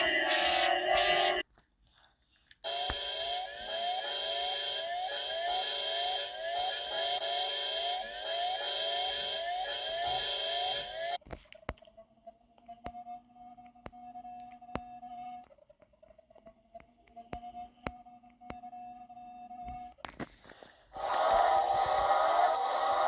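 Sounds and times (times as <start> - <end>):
electronic emergency alarm tone: 0.0 - 1.4, 2.7 - 11.2
scattered clicks: 19.9 - 22.8.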